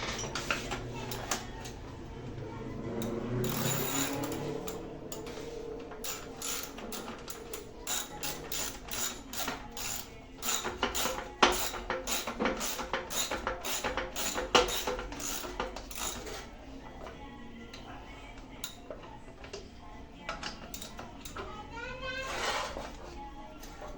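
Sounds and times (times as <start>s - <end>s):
ratchet wrench clicking: 3.0s - 5.3s, 6.0s - 16.5s, 20.4s - 21.4s.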